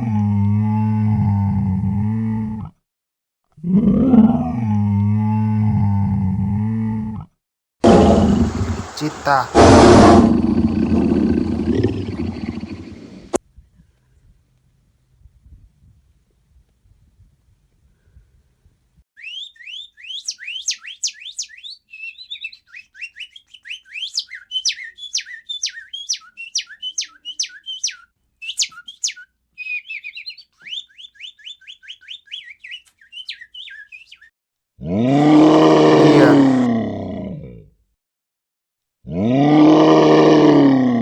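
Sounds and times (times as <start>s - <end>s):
loud animal roar: 3.6s - 12.6s, 34.8s - 37.7s, 39.0s - 41.0s.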